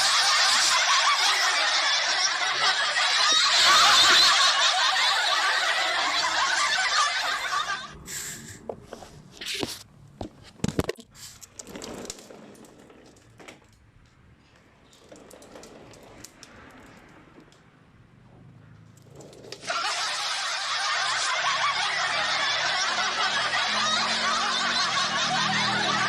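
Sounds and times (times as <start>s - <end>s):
crowd of voices laughing: 0.0s - 8.5s, 19.6s - 26.0s.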